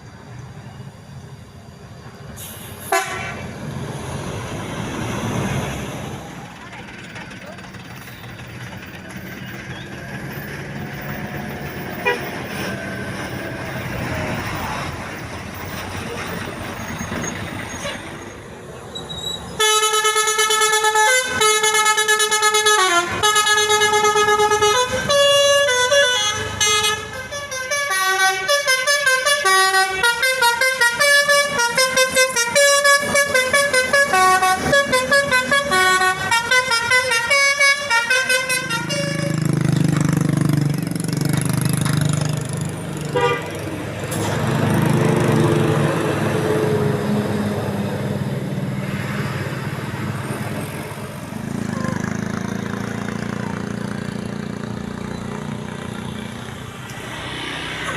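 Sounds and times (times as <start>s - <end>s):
traffic noise: 0.0s - 57.9s
multi-tone musical horn melody: 2.9s - 3.4s, 19.6s - 39.5s, 43.2s - 43.5s.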